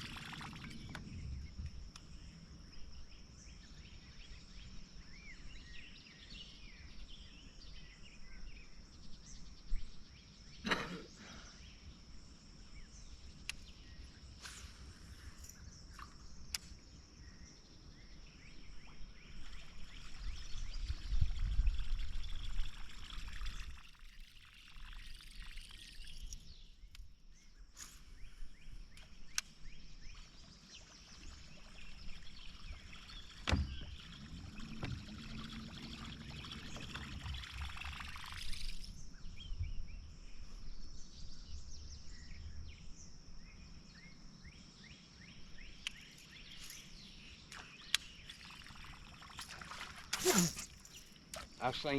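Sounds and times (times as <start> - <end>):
low rumble: 32.4 - 38.2
high-pitched hum: 33.4 - 38.9.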